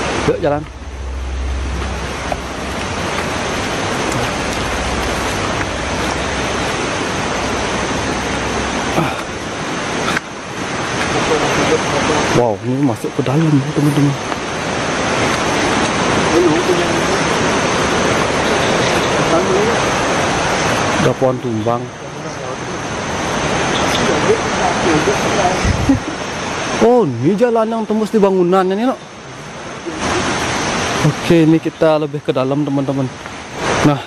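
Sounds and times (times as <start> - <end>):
river water rushing: 0.0 - 34.0.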